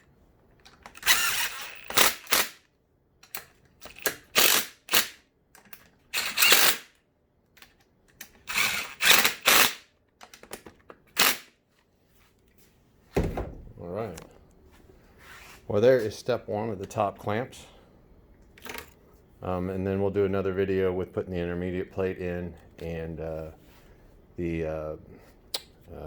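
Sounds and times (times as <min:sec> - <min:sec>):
bolt driver clicking bursts: 0:00.7 - 0:02.6, 0:03.2 - 0:06.9.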